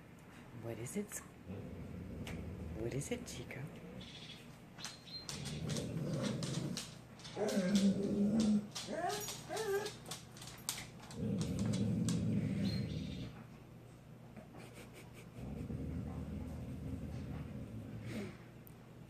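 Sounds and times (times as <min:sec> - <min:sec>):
dog whining: 0:04.8 - 0:10.0, 0:11.4 - 0:13.4.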